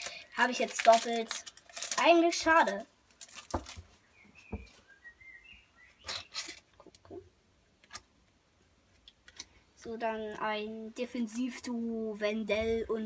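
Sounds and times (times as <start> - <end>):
cards tapping and rustling: 0.6 - 3.9
faint high chirp: 4.1 - 6.4.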